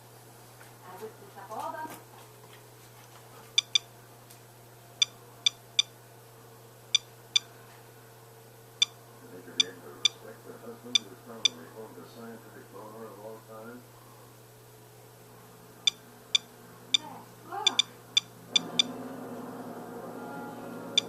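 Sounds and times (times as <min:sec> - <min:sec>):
geiger counter clicking: 0:03.6 - 0:03.9, 0:06.9 - 0:07.5, 0:15.9 - 0:18.9.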